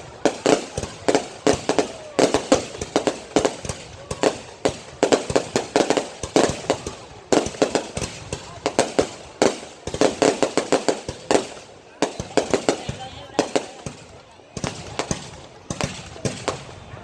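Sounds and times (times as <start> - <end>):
fireworks bangs and pops: 0.0 - 17.0.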